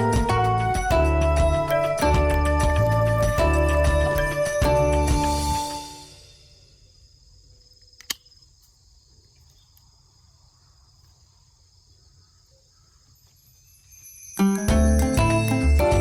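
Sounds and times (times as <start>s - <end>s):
insects chirping: 5.2s - 15.8s
sharp click: 7.8s - 8.4s.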